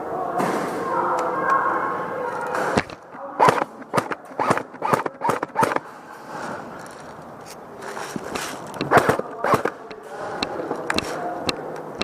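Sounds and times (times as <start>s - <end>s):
airsoft gun shots: 2.8s - 5.8s, 8.9s - 9.8s.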